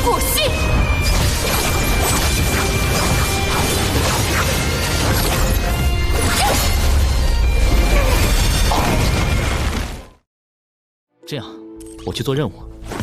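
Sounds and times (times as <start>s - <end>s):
dramatic soundtrack music: 0.0s - 9.9s.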